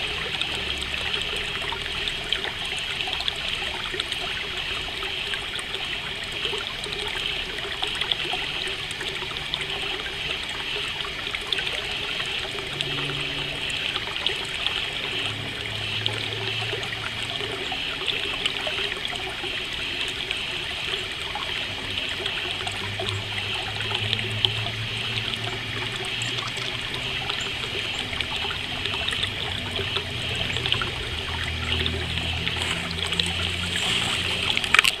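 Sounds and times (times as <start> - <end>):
crickets chirping: 0.0 - 35.0
water trickling in a stream: 0.0 - 35.0.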